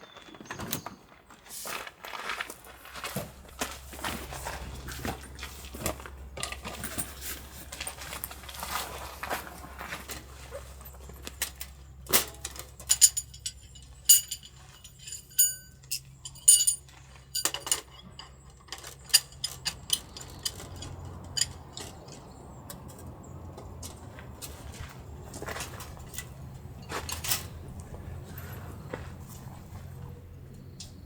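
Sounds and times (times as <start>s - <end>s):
metal items clinking and knocking: 10.7s - 24.8s.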